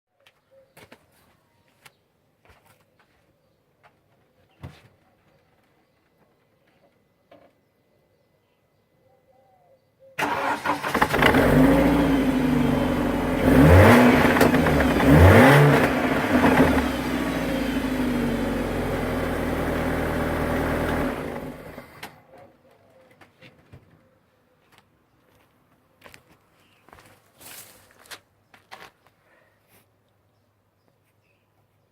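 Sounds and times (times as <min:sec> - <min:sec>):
car engine idling and revving: 0:10.2 - 0:22.0
car engine starting: 0:10.2 - 0:22.2.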